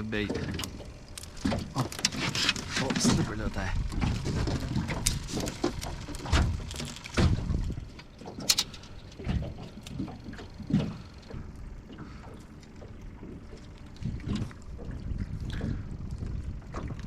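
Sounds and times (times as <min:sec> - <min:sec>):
fishing gear knocks and clunks: 0:00.0 - 0:11.4
low hiss of wind and water: 0:00.0 - 0:17.0.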